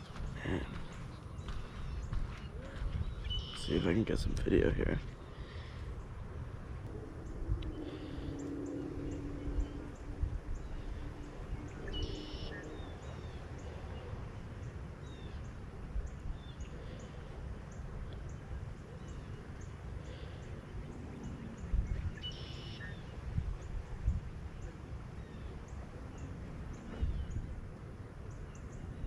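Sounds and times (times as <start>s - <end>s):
bird calls: 0.0s - 6.2s, 6.9s - 23.8s
low wind rumble on microphone: 0.0s - 29.0s.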